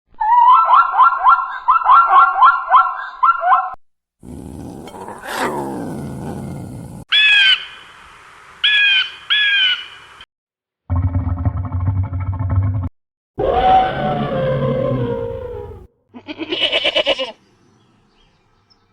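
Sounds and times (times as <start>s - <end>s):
sweeping animal call: 13.4s - 17.3s.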